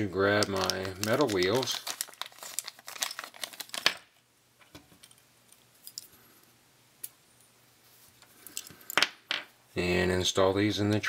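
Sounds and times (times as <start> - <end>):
packaging rustling: 0.0 - 4.2.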